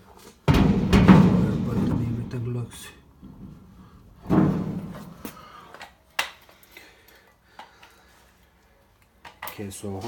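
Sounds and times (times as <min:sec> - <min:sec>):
metal clunk ringing: 0:00.5 - 0:02.4
clicks and knocks: 0:00.5 - 0:02.5.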